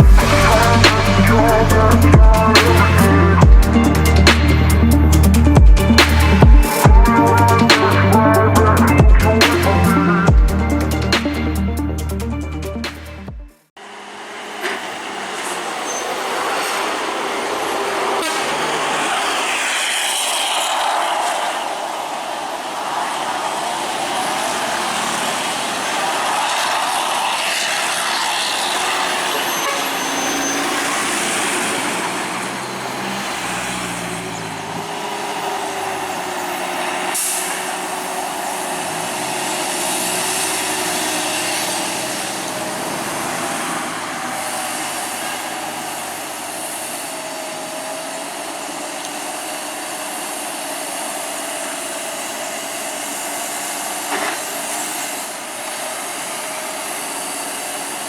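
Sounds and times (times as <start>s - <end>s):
wavering whine: 0.0s - 12.2s
heavy truck engine and brakes: 0.0s - 58.0s
traffic noise: 0.0s - 58.0s.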